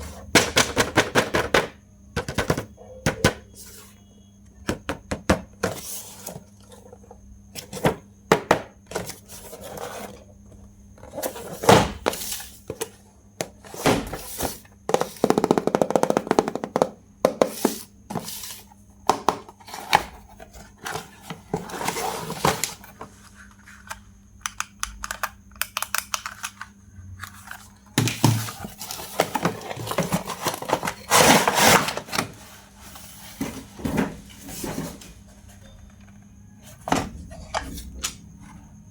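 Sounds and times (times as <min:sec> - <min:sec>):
packaging rustling and scraping: 0:08.9 - 0:10.3, 0:19.5 - 0:23.9, 0:27.2 - 0:35.8.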